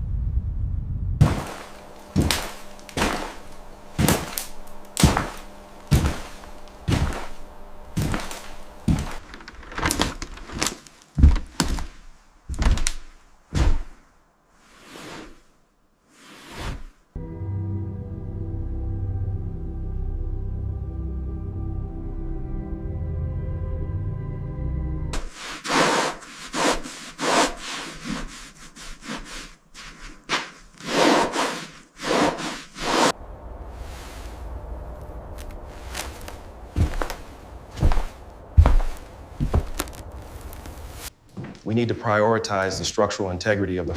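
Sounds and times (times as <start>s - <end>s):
heavy thuds and knocks: 1.2s - 14.0s, 35.2s - 41.6s
rasping strokes on wood: 25.2s - 33.2s.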